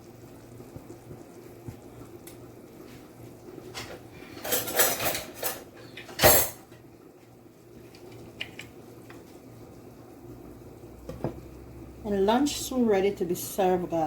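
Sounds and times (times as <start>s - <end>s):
pots and utensils clattering: 3.7s - 6.8s.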